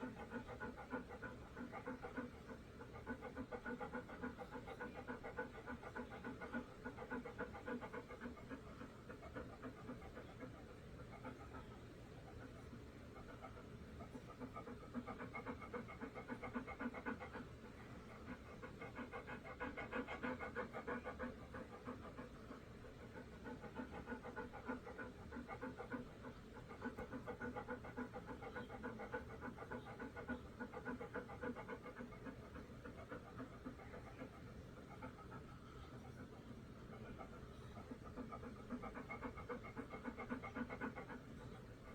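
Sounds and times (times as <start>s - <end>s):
dog panting: 0.0s - 41.9s.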